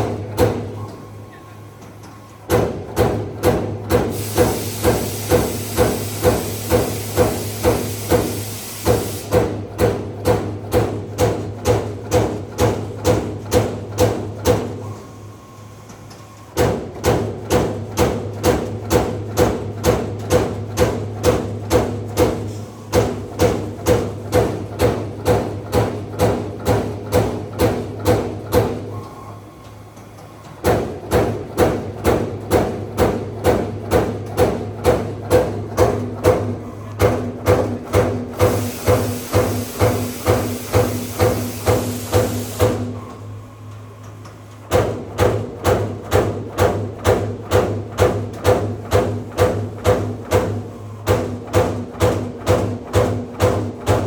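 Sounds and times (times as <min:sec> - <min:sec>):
hiss: 0:04.1 - 0:09.4, 0:38.4 - 0:42.8
punch press punching sheet metal: 0:30.6 - 0:43.0.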